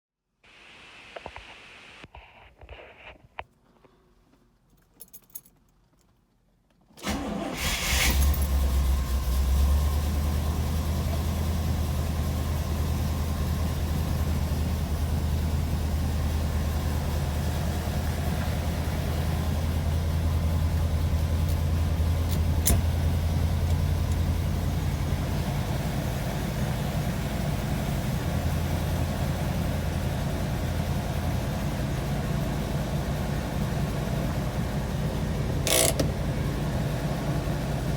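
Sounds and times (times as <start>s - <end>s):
car engine cranking and starting: 7.0s - 37.9s
car engine idling: 7.0s - 37.9s
engine rattle: 7.0s - 37.9s.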